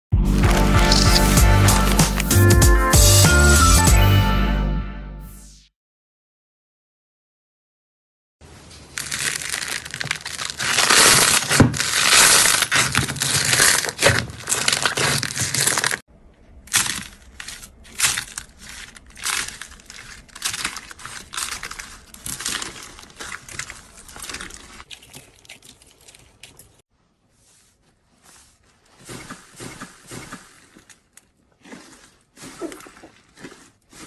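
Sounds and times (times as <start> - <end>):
slime crackling and crunching: 0.3 - 2.4, 8.8 - 16.0, 16.6 - 26.8, 28.7 - 34.0.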